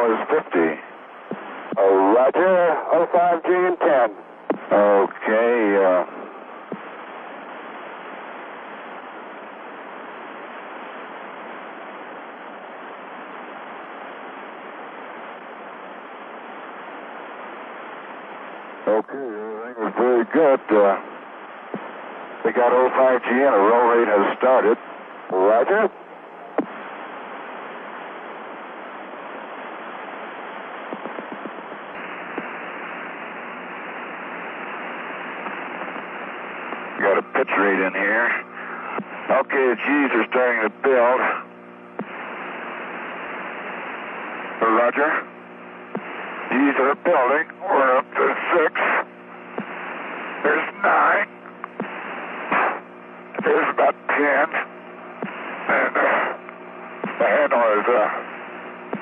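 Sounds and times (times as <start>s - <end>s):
radio channel hiss: 0.0s - 59.0s
faint clicks: 30.8s - 32.6s, 51.4s - 52.0s.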